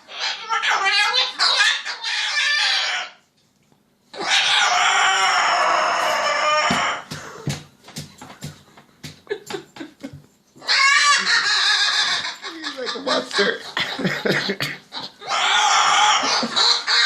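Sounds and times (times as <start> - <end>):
parrot screeching: 0.0 - 3.2, 4.1 - 7.1, 10.6 - 13.8, 14.9 - 17.0.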